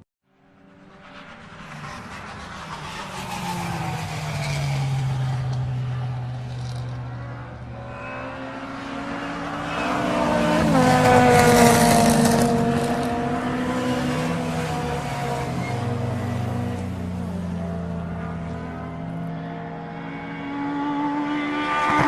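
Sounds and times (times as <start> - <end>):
sports car engine under load: 1.6 - 18.9.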